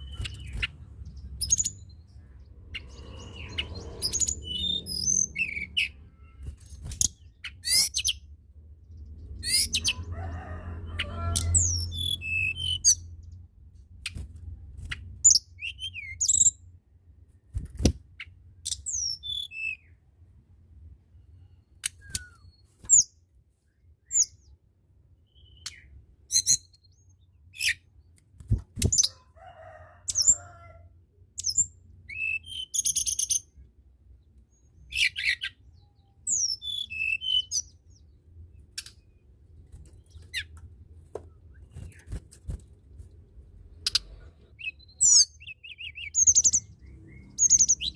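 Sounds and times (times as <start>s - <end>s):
bird chirping and whistling: 3.2s - 6.0s, 11.5s - 13.0s, 18.9s - 19.8s, 31.5s - 33.4s, 36.3s - 37.7s, 44.6s - 47.9s.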